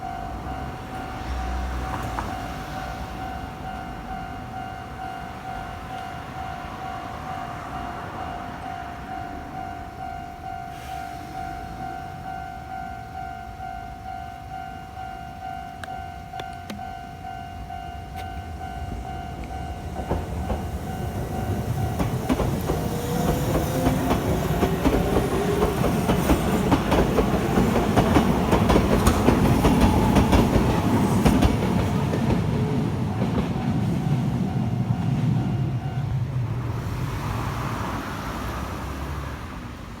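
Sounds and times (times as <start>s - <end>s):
level-crossing alarm ringing: 0.0s - 36.2s
electric train passing: 0.0s - 40.0s
train wheels clicking over rail joints: 18.1s - 35.4s.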